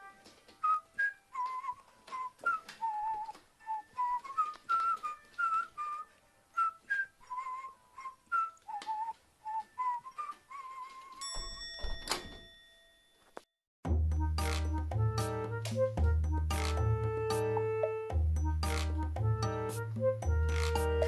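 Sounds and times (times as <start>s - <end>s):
whistled tune: 0.0s - 11.2s.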